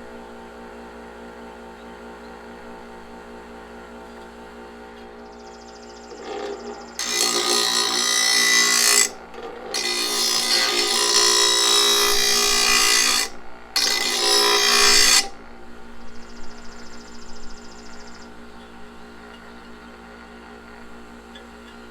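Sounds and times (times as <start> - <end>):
bench grinder motor hum: 3.2 - 17.0
metal grinding on wheel: 6.1 - 15.4.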